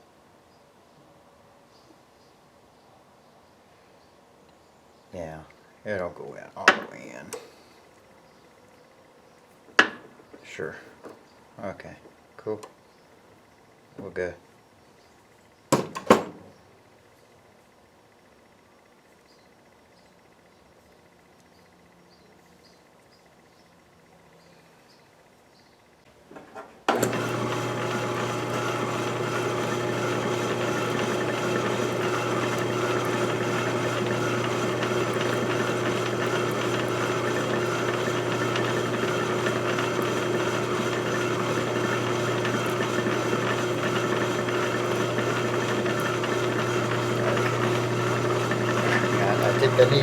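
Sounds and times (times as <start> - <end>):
power tool motor humming and whining: 26.9 - 50.0.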